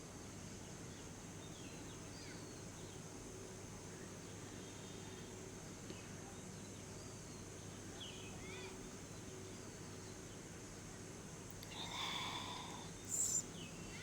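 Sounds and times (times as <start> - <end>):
faint background hiss and hum: 0.0 - 14.0
bird chirps: 13.0 - 14.0.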